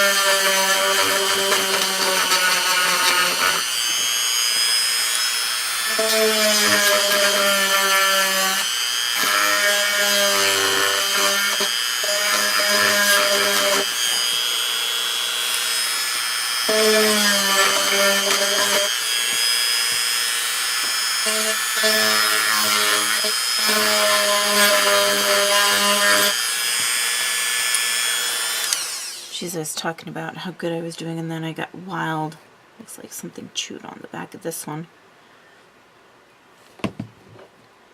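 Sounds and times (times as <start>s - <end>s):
small electric motor whining: 0.0s - 29.3s.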